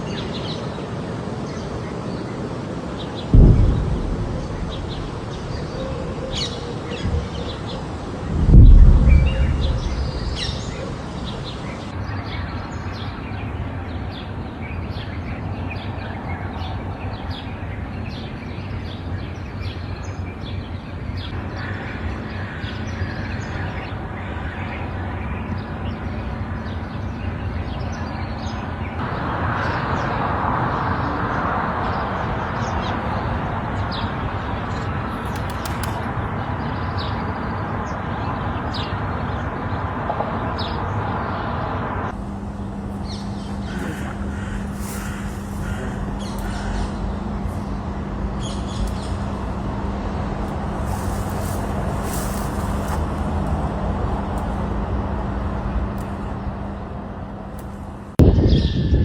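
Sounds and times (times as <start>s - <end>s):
birds chirping: 0.0s - 29.0s, 42.4s - 53.4s
loud deep boom: 3.3s - 11.9s.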